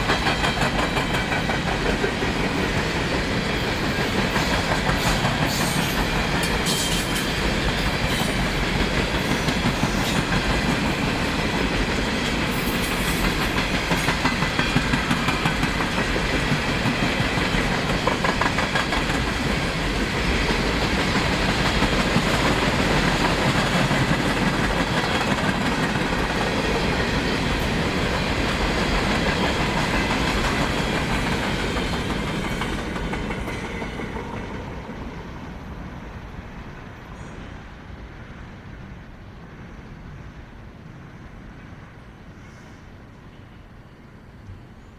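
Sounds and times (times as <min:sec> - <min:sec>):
train wheels clicking over rail joints: 0:00.0 - 0:35.3
train rolling rush: 0:00.0 - 0:44.9.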